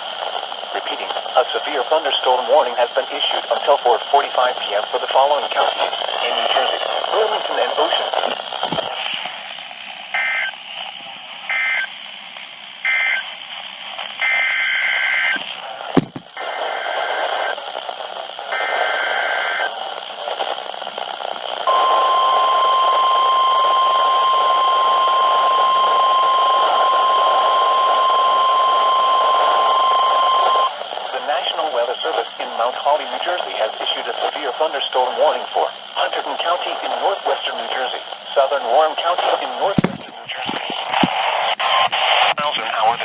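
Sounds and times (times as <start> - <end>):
receiver hiss: 0.0 - 43.0
steady warning alarm tone: 10.2 - 10.7, 11.4 - 11.9, 12.8 - 13.3
warbling data bursts: 39.9 - 43.0.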